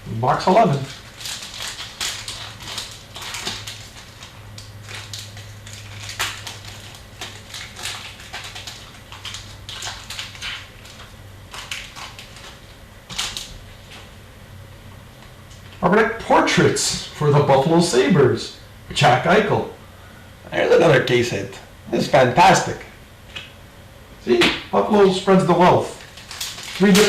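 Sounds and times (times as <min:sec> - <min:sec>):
low electrical hum: 0:00.0 - 0:27.0
wrappers crinkling: 0:00.4 - 0:14.1, 0:25.7 - 0:27.0
card packs torn open: 0:00.7 - 0:14.0, 0:25.9 - 0:27.0.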